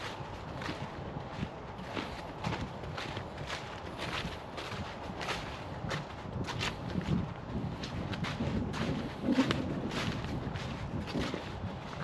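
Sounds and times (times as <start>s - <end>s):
footsteps on muddy trail: 0.0s - 12.0s
wind rumble on microphone: 0.0s - 12.0s.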